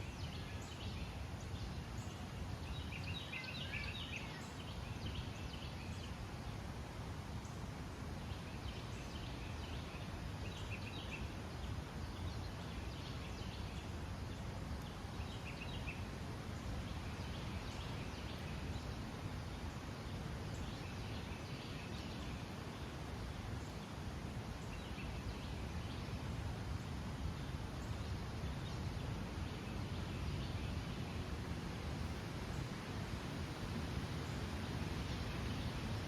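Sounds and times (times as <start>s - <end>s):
small birds chirping: 0.0s - 6.3s.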